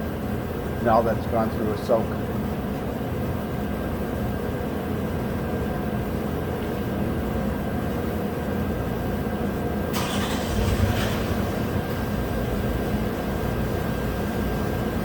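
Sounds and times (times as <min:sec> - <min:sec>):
engine starter cranking: 0:09.9 - 0:12.4
car engine running: 0:10.0 - 0:15.0.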